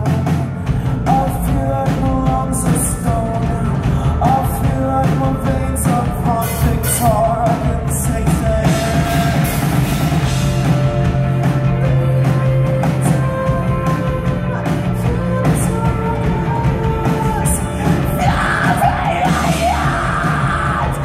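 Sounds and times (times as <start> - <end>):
rock band playing live: 0.0 - 21.0.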